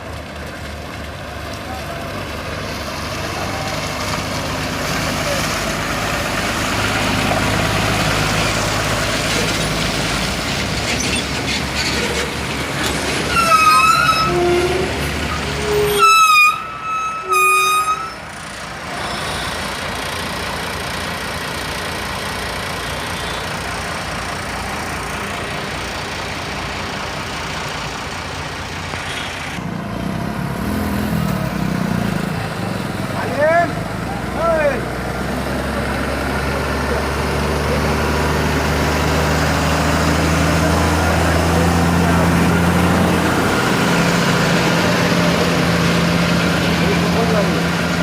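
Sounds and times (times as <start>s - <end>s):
road traffic: 0.0s - 48.0s
vehicle horn blasts: 13.3s - 18.2s.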